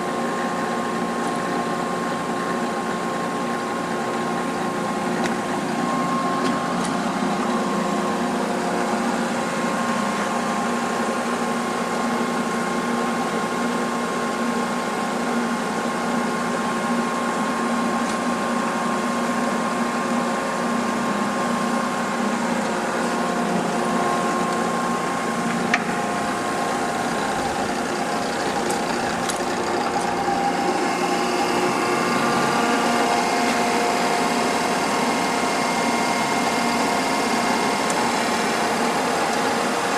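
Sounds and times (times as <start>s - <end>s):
grinder machine humming: 0.0s - 11.1s, 21.0s - 39.9s.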